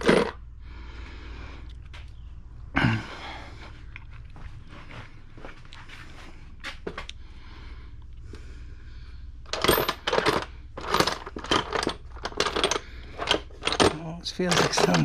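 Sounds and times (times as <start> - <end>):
metal parts clinking and rattling: 0.0 - 0.4, 9.5 - 15.0.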